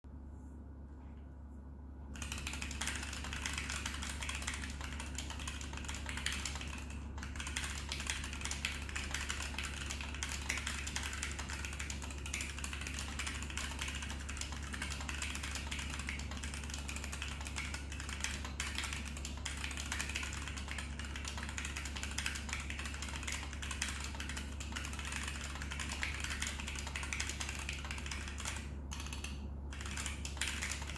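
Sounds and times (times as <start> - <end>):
fast typing on mechanical keyboard: 2.2 - 30.9.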